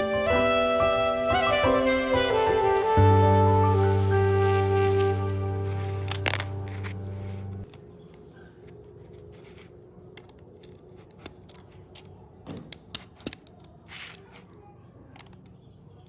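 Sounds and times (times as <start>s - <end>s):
background music: 0.0s - 7.7s.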